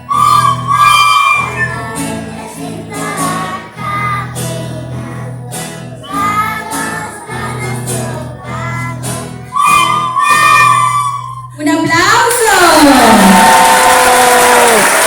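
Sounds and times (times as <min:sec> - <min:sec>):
children singing: 0:00.0 - 0:11.3
instrumental accompaniment: 0:00.0 - 0:12.4.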